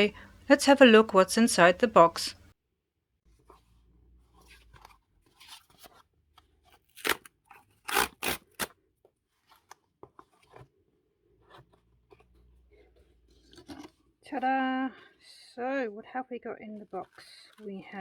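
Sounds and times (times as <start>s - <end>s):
cardboard flaps and packing rustling: 3.4s - 10.7s
tape tearing: 6.8s - 8.8s.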